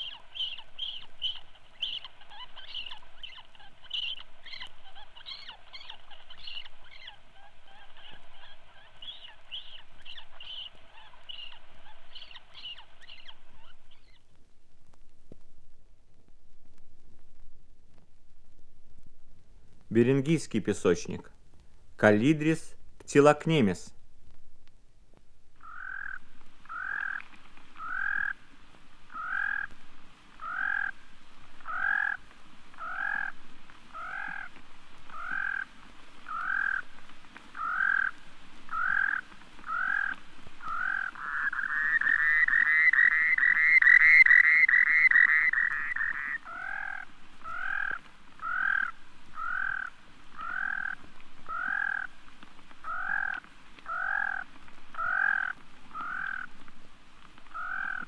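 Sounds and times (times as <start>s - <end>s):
bird trill: 0.0s - 14.2s, 38.7s - 52.1s
bird calling rough notes: 0.0s - 14.3s, 25.6s - 28.5s, 29.1s - 29.8s, 30.4s - 52.2s, 52.8s - 56.6s, 57.5s - 58.0s.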